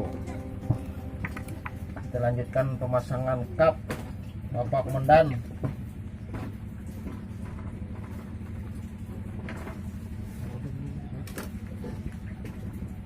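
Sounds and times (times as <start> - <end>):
brush cutter engine idling: 0.0 - 12.8.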